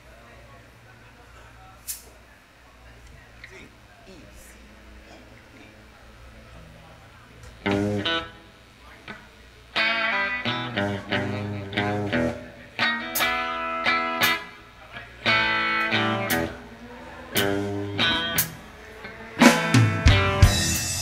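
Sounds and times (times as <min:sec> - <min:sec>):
electric guitar phrases: 0:07.5 - 0:21.0
drums: 0:10.1 - 0:14.6, 0:17.3 - 0:21.0.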